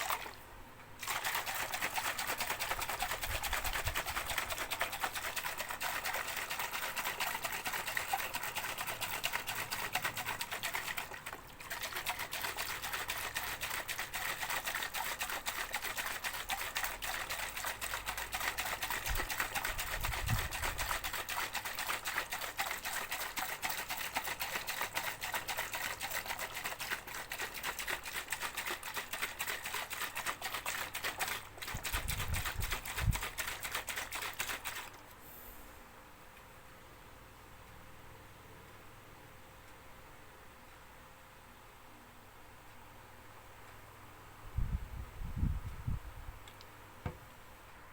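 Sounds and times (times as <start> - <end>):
water shaker rattling: 0.0 - 0.4, 1.0 - 35.1.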